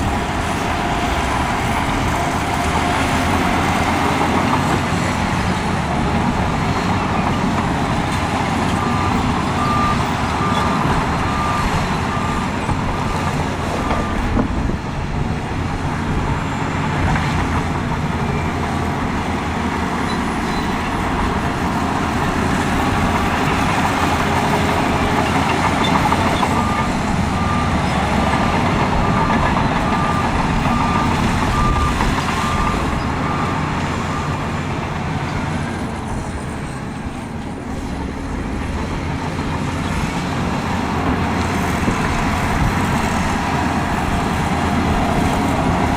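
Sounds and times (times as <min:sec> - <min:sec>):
diesel earthmoving machinery running: 0:00.0 - 0:45.9
reversing alarm beeping: 0:00.1 - 0:14.7, 0:19.8 - 0:37.2.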